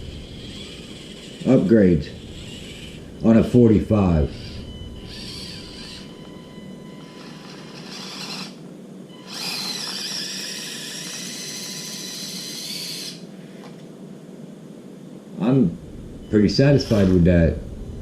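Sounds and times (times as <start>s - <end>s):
small electric motor whining: 0.0s - 13.3s, 16.6s - 17.6s.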